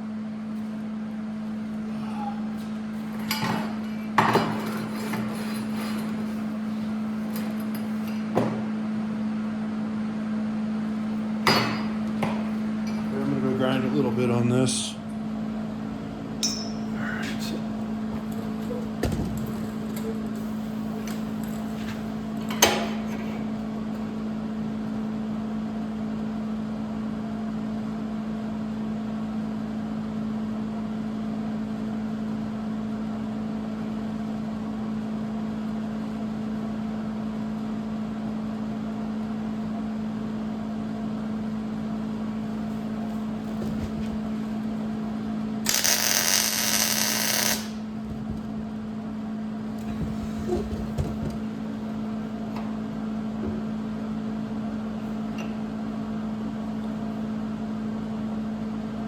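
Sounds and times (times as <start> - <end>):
sharp metal clank: 16.4 - 17.5
angle grinder grinding steel: 45.7 - 47.8.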